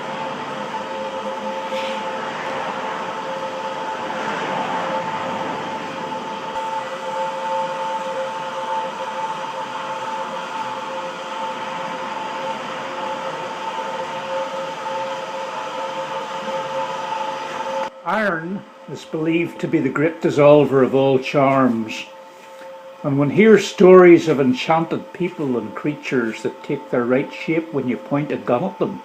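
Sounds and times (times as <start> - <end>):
machine drone with hum: 0.0 - 29.0.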